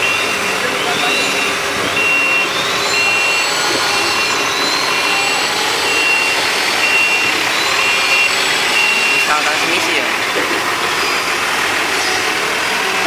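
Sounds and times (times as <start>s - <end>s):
warning alarm beeping: 0.0s - 10.2s
heavy machinery running: 0.0s - 13.0s.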